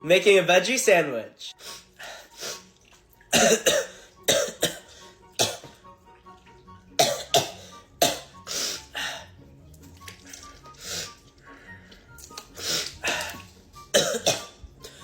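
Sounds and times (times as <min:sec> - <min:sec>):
quiet background music: 0:00.0 - 0:15.0
woman coughing: 0:03.3 - 0:05.7, 0:07.0 - 0:08.3, 0:13.9 - 0:14.6.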